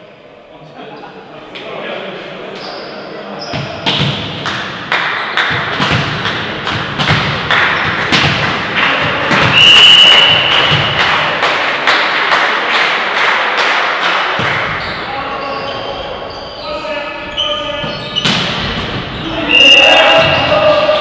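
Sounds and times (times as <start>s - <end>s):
referee's whistle: 9.5s - 11.0s, 19.2s - 20.7s.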